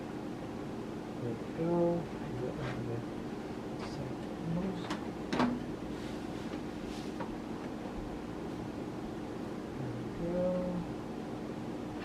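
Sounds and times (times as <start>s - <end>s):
steady low hum: 0.0s - 12.0s
cables brushing: 5.9s - 7.3s.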